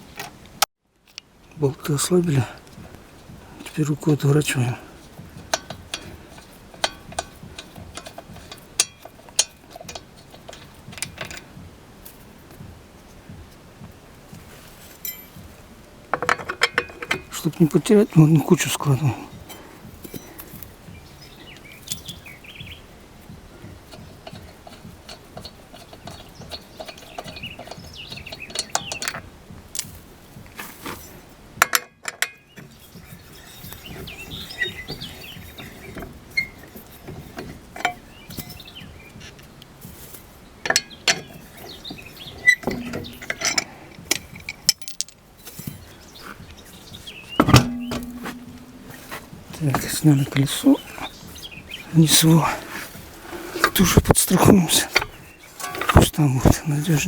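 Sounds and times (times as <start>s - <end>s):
metallic clicks and clinks: 14.9s - 15.4s, 42.4s - 45.8s.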